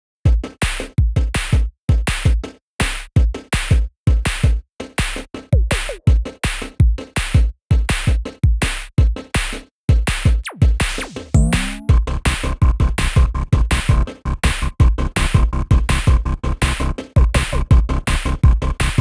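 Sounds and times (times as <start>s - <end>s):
electronic music with drum-machine beat: 0.3s - 19.0s
deep bass thumps: 10.3s - 19.0s.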